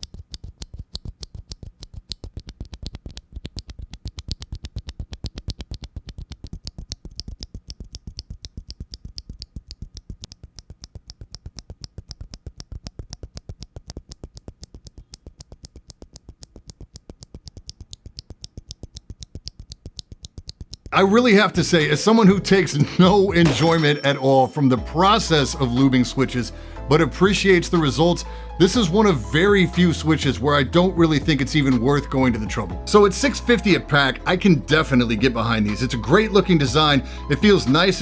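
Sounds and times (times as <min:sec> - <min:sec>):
mechanical keyboard typing clacks: 0:00.0 - 0:21.0.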